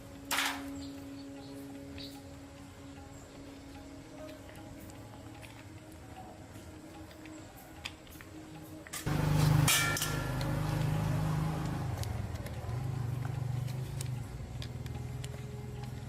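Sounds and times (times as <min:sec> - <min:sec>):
motor humming: 0:09.1 - 0:15.2.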